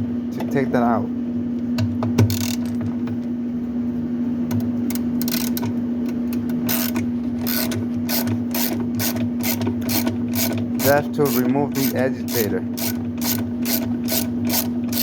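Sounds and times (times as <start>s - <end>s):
steady hum: 0.0s - 15.0s
socket wrench metal noise: 2.3s - 2.8s, 4.9s - 5.7s, 6.6s - 15.0s.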